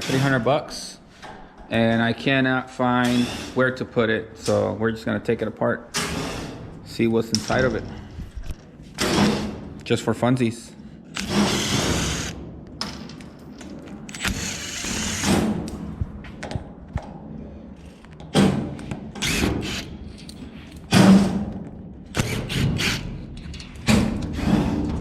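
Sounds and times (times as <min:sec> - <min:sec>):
cordless drill running: 0:11.2 - 0:12.4, 0:14.1 - 0:15.3, 0:19.2 - 0:19.9.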